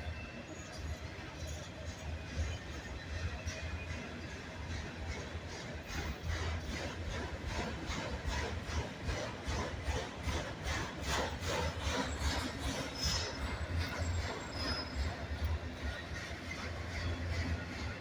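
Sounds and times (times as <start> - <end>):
freight train rumble: 0.0 - 18.0
train wheels clacking: 0.5 - 18.0
high wheel squeals: 11.4 - 18.0.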